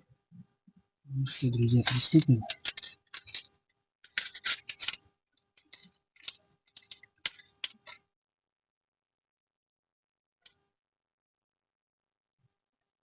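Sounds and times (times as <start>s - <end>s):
plastic crinkling and scraping: 1.2s - 5.0s, 5.6s - 8.0s.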